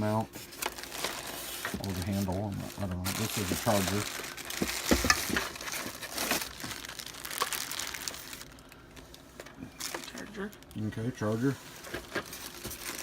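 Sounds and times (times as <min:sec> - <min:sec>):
packaging crinkling and rustling: 0:00.0 - 0:13.0.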